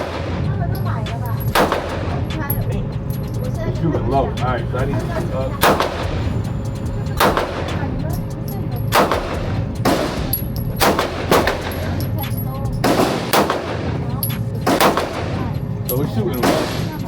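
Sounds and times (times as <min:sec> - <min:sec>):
pistol shots: 0:01.4 - 0:02.1, 0:05.6 - 0:06.2, 0:07.2 - 0:07.6, 0:08.9 - 0:12.0, 0:12.8 - 0:15.5, 0:16.4 - 0:17.0.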